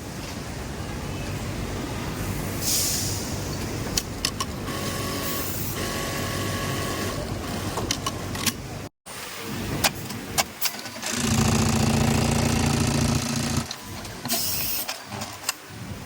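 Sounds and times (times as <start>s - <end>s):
sewing machines humming: 4.7s - 7.8s, 11.0s - 13.8s
sewing machine stitching: 10.9s - 13.8s.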